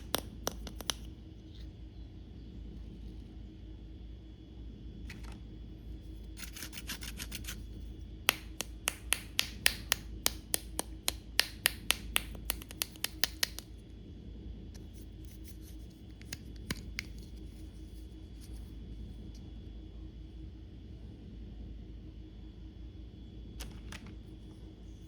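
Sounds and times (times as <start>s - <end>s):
sharp clicks of plastic parts: 8.3s - 13.7s.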